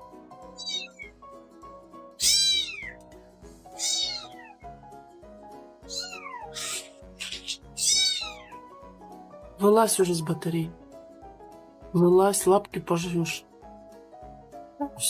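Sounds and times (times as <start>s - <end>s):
cat meowing: 0.6s - 1.1s, 2.2s - 3.0s, 3.8s - 4.6s, 5.9s - 8.6s.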